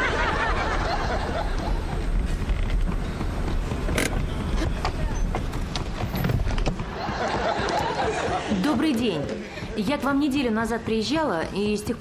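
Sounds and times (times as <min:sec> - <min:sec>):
car engine running: 0:00.8 - 0:07.5.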